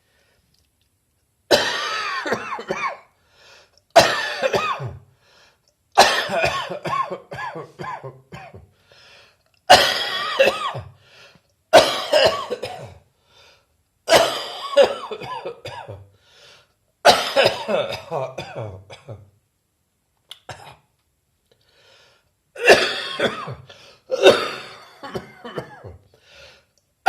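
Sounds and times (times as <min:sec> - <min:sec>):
person coughing: 0:01.5 - 0:03.1, 0:04.0 - 0:05.0, 0:06.0 - 0:08.7, 0:09.7 - 0:11.0, 0:11.8 - 0:13.0, 0:14.1 - 0:16.0, 0:17.1 - 0:19.3, 0:22.6 - 0:26.0.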